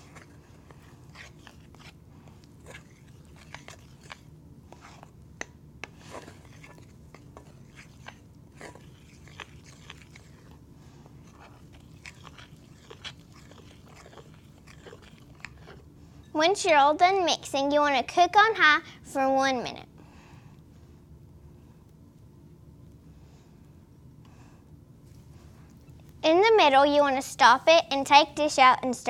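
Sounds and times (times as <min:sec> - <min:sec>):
spoon stirring thick mixture in bowl: 0:00.0 - 0:16.5.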